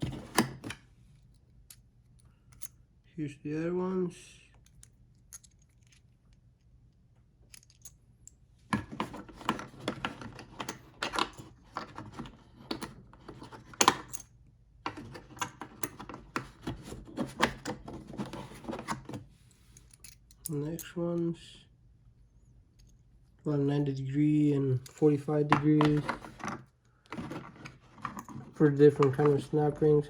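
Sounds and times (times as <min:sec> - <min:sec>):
pliers and plastic case rattling: 0:24.8 - 0:29.6.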